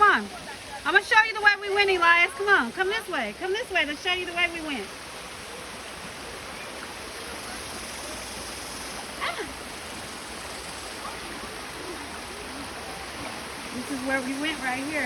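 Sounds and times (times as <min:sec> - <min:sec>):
flowing water rushing: 0:00.0 - 0:15.0.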